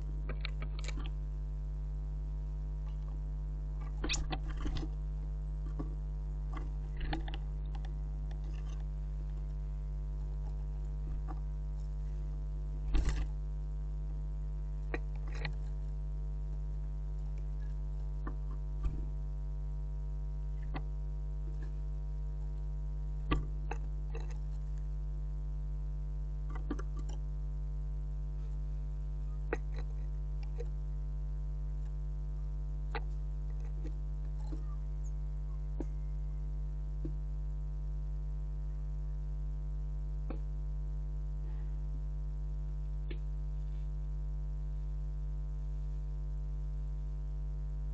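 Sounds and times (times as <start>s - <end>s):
birds pecking at feeder: 0.0s - 1.3s, 2.8s - 13.4s, 14.6s - 19.2s, 20.4s - 24.9s, 26.4s - 27.3s, 29.2s - 30.8s, 32.9s - 37.2s
electrical mains hum: 0.0s - 47.9s.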